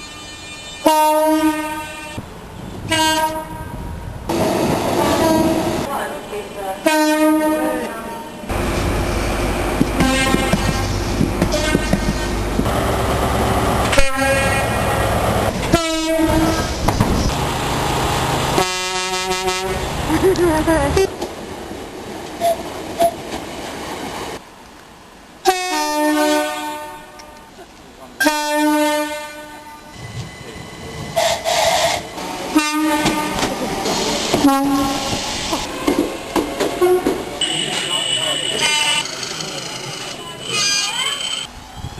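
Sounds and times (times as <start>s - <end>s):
running train: 0.0s - 41.9s
locomotive air horn blasts: 0.1s - 2.2s, 2.9s - 3.8s, 10.0s - 12.4s, 13.9s - 14.8s, 15.7s - 16.7s, 18.6s - 19.9s, 25.5s - 27.4s, 28.2s - 29.9s, 31.2s - 33.4s, 34.4s - 35.1s.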